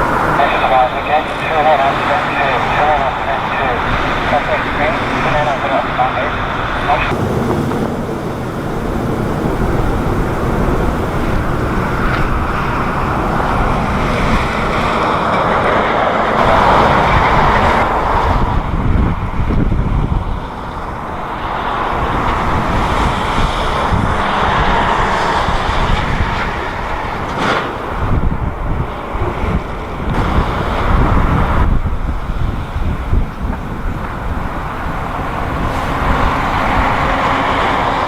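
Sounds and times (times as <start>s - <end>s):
jet airliner engine noise: 0.0s - 38.0s
wind buffeting microphone: 0.0s - 38.0s.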